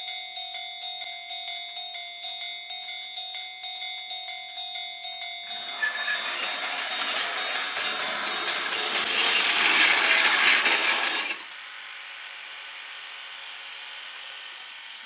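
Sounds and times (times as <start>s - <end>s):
model train rattling on track: 5.5s - 11.6s.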